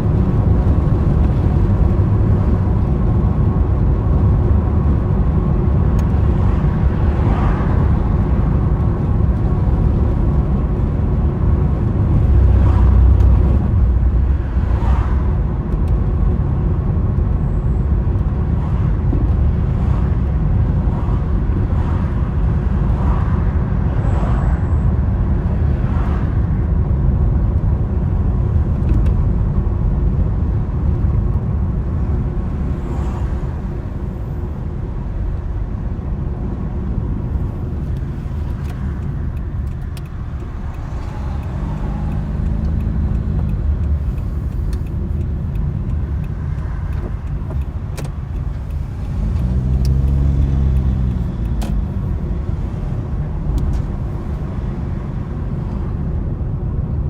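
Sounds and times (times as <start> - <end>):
road and wind noise: 0.0 - 57.0
engine note rising and falling: 40.5 - 44.0.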